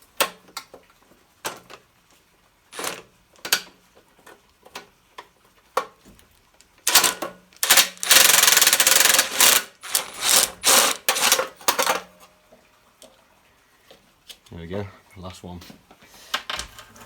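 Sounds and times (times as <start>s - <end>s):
impact wrench hammering: 6.9s - 11.5s.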